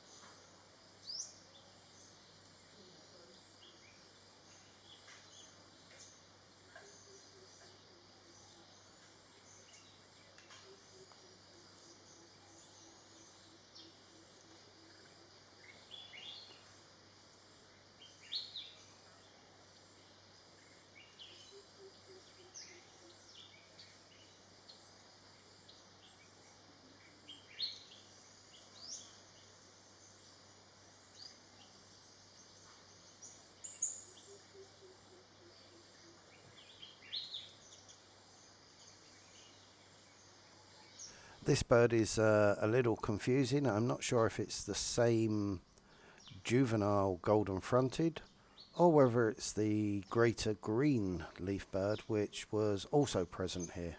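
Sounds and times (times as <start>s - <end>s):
birds chirping: 38.8s - 53.9s.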